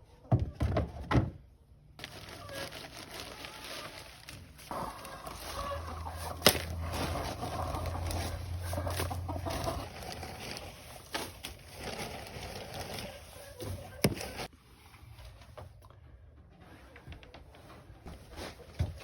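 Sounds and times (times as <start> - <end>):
chickens clucking: 4.7 - 11.5, 12.9 - 14.4.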